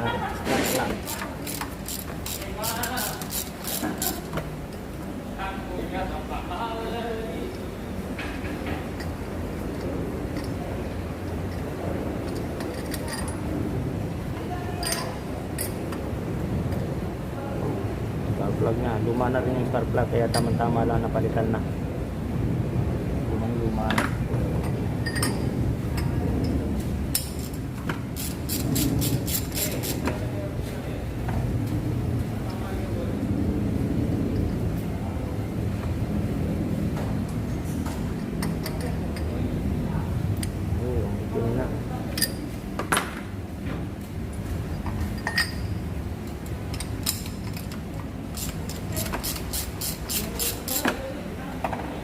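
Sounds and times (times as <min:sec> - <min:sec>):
steady low rumble: 0:15.2 - 0:42.5
metal hand tools clicking: 0:28.2 - 0:30.0, 0:48.4 - 0:50.9.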